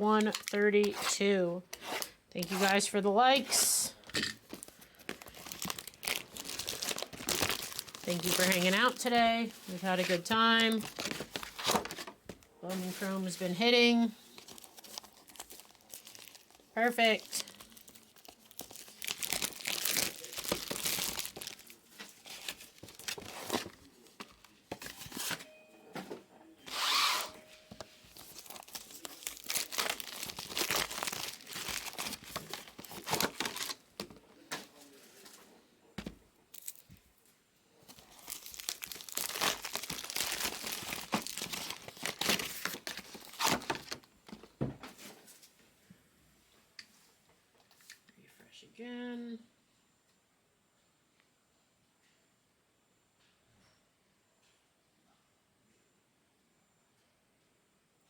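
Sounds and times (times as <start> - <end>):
packaging tearing and crinkling: 4.5 - 12.1, 14.3 - 25.4, 28.1 - 34.1, 36.5 - 36.9, 37.9 - 44.1.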